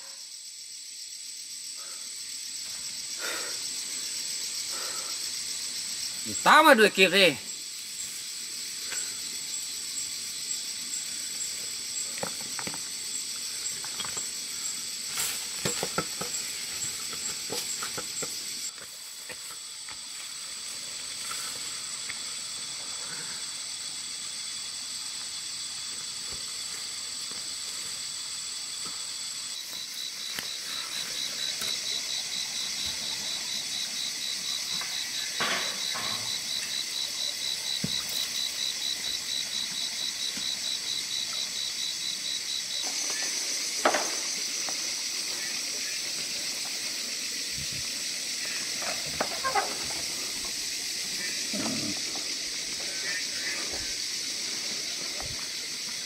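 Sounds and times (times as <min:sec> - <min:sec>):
crickets and katydids trilling: 0:00.0 - 0:56.0
fast pulsing insect trill: 0:00.0 - 0:56.0
rustles and knocks: 0:15.1 - 0:19.6.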